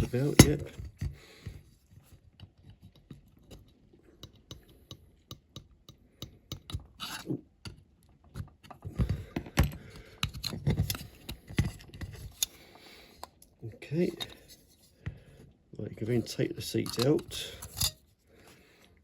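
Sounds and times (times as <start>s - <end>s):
hand tool clicks and scrapes: 9.6s - 14.9s, 16.2s - 18.1s.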